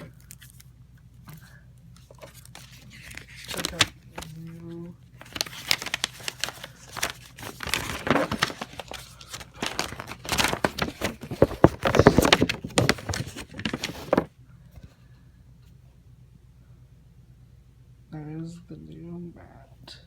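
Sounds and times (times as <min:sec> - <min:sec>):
packaging crinkling and rustling: 0:02.0 - 0:04.6, 0:05.2 - 0:14.3.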